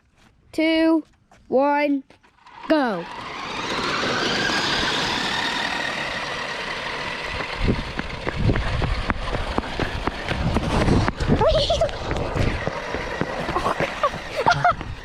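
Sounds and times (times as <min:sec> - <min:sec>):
electric motors whining: 0:02.3 - 0:15.0
low thumps and rumble: 0:07.3 - 0:15.0.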